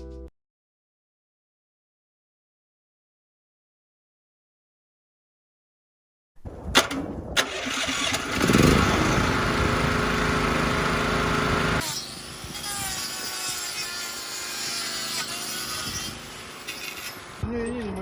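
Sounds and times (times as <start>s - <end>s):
motor-driven machine humming: 8.4s - 11.8s.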